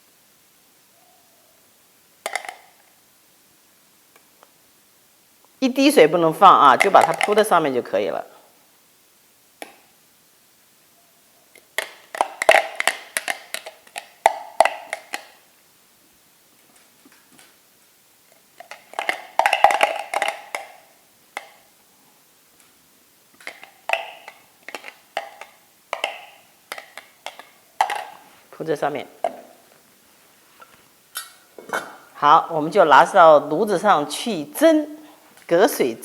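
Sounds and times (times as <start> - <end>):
onion pieces tapping on bowl: 23.6 - 28.2.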